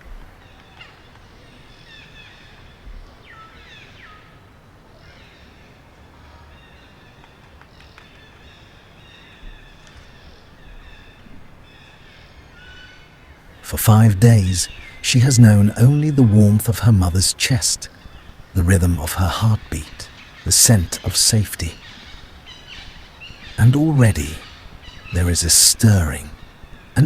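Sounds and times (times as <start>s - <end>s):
faint background hush: 4.3s - 27.0s
birds chirping and whistling: 8.5s - 27.0s.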